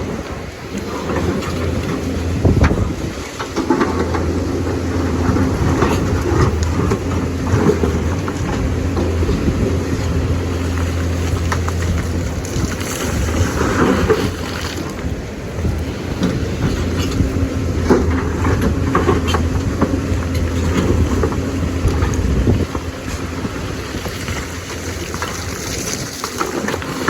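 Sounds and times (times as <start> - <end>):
excavator diesel engine running: 0.0 - 27.0
machine knocks and clatter: 15.9 - 27.0.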